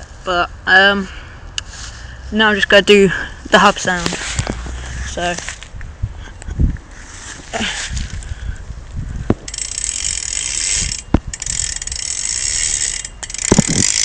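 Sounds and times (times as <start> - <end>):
bicycle hub ratcheting clicks: 9.2 - 14.0.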